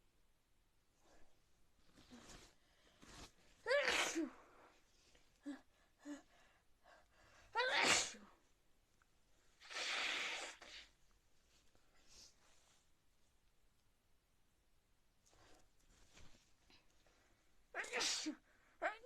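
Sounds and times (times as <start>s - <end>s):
person sneezing: 3.7s - 4.4s, 7.6s - 8.3s, 17.8s - 18.4s
sniffs: 9.6s - 10.9s.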